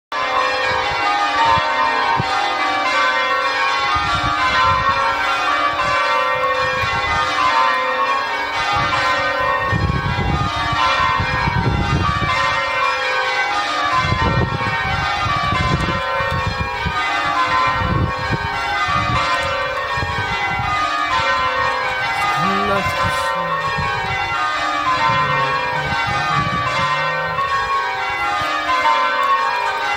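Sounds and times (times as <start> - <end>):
church bells pealing: 0.1 - 29.9.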